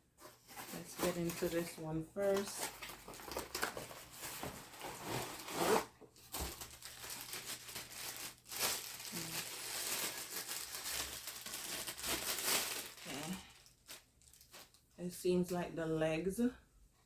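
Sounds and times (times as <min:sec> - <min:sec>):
packaging rustling and crinkling: 0:00.2 - 0:14.9
packaging tearing: 0:04.6 - 0:14.8.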